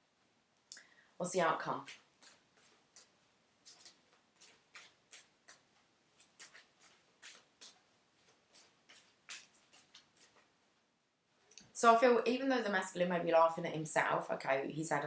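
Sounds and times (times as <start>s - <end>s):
cards being shuffled: 1.9s - 10.5s.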